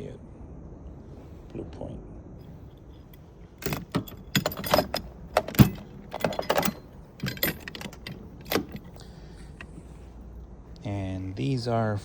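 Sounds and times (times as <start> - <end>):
metal tools clinking: 2.8 - 9.9.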